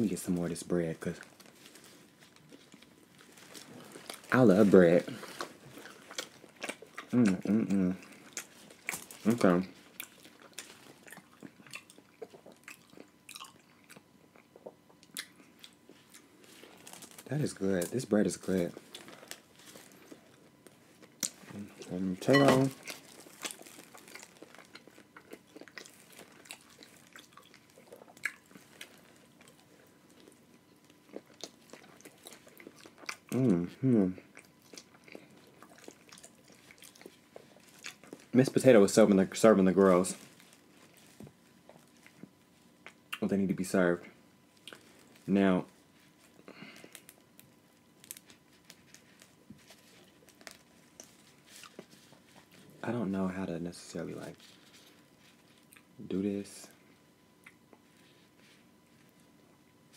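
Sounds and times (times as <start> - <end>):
wet chewing and mouth smacks: 5.2 - 9.2, 9.8 - 17.2, 22.8 - 33.4, 34.3 - 38.4, 44.6 - 45.2, 55.3 - 56.0, 57.4 - 57.9
crawfish shells cracking: 16.8 - 33.4, 46.5 - 52.6.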